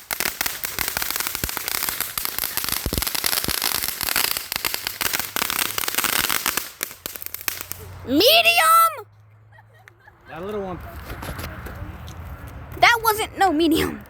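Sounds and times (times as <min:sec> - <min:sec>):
fireworks crackling: 0:00.0 - 0:09.0.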